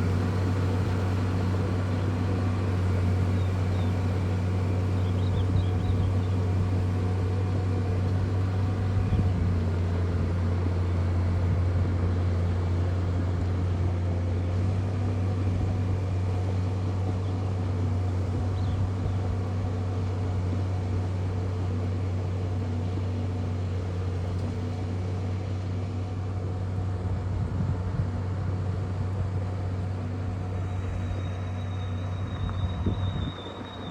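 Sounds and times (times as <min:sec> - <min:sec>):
bulldozer diesel engine drone: 0:00.0 - 0:33.9
faint high whine: 0:29.0 - 0:33.9.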